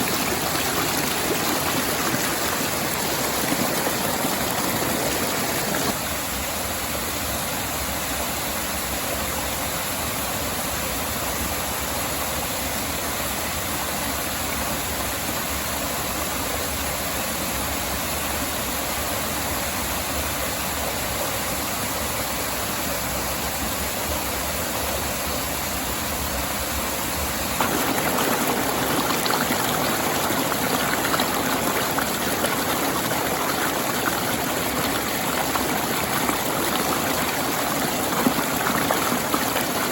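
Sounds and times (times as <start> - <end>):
stream and waterfall rushing: 0.0 - 6.0, 27.6 - 39.9.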